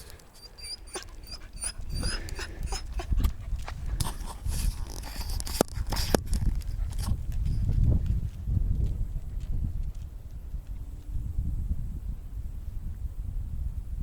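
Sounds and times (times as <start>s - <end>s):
wind rumble: 0.0s - 14.0s
footsteps on rocky trail: 1.8s - 10.9s.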